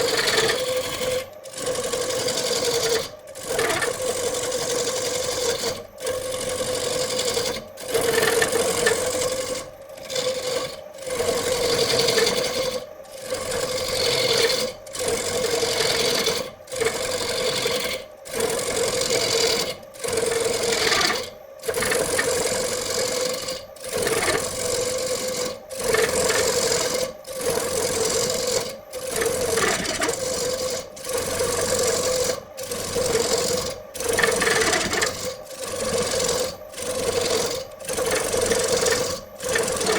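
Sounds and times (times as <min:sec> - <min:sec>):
woodworking power tool rasping: 0:00.0 - 0:39.9.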